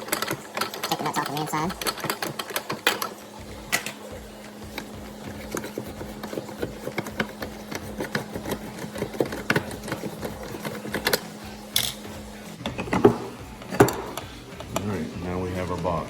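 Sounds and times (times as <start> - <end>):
steady low hum: 3.2 - 16.0.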